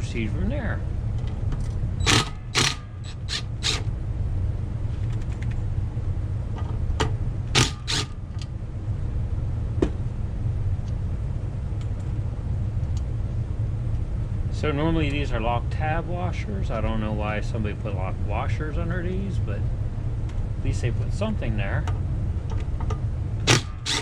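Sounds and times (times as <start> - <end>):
steady low hum: 0.0 - 24.0
wrench metallic clicks and clinks: 2.0 - 3.9, 7.6 - 8.2, 23.5 - 24.0.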